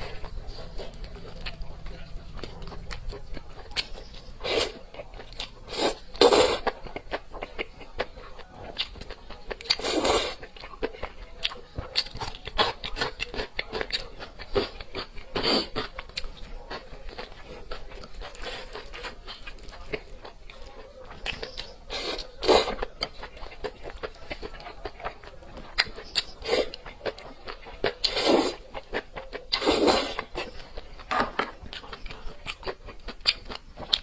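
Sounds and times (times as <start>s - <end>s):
chewing and crunching food: 0.0s - 34.0s.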